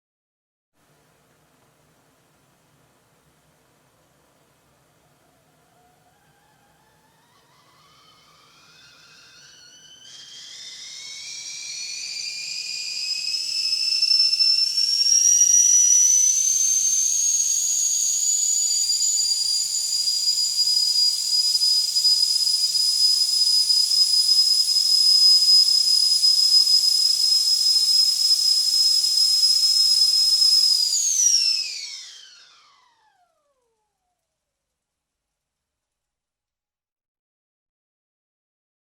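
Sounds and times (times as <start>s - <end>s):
whistling kettle shrilling: 5.1s - 33.5s.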